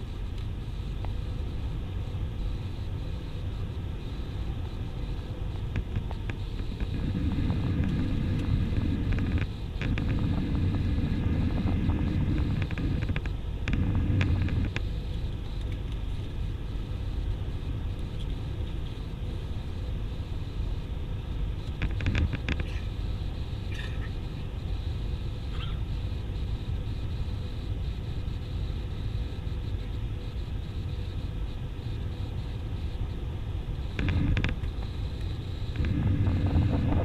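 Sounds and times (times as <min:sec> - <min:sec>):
airplane cabin engine drone: 0:00.0 - 0:37.0
heavy low rumble: 0:05.0 - 0:14.9, 0:33.8 - 0:37.0.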